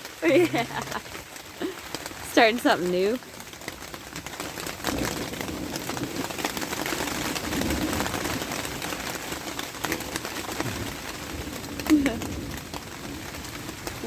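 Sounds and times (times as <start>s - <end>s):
steady rain with drop ticks: 0.0s - 14.0s.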